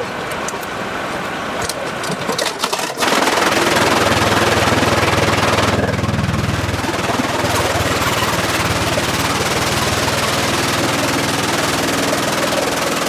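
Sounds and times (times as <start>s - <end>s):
knocks and clatter: 1.6s - 13.0s
machine rattling: 1.6s - 13.0s
low machine hum: 3.4s - 13.0s.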